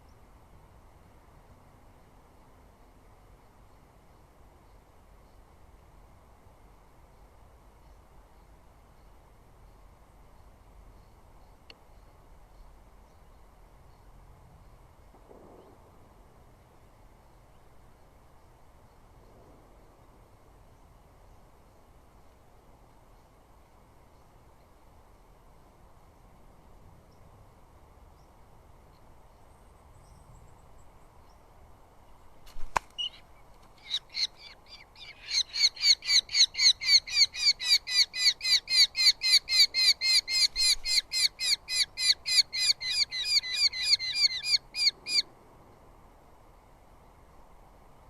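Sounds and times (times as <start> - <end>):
bird calling repeated notes: 33.8 - 45.2.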